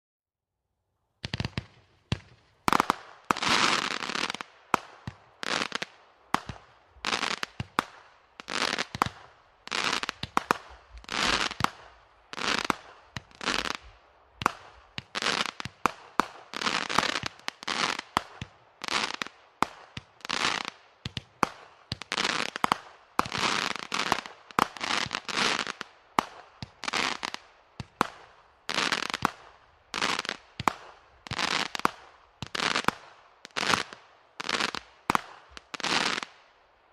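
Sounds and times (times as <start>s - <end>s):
firework shots popping: 1.2s - 36.4s
firework crackling hiss: 1.3s - 36.4s.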